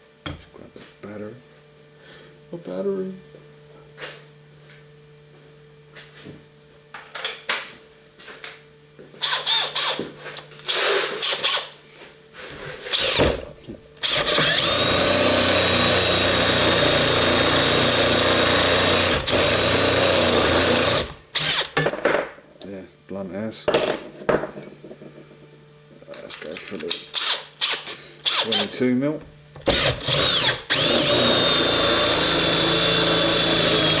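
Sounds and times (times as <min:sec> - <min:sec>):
cordless drill boring into hardwood: 0:09.2 - 0:10.0, 0:10.7 - 0:11.7, 0:12.9 - 0:13.3, 0:14.0 - 0:21.7, 0:27.2 - 0:28.7, 0:29.6 - 0:34.0.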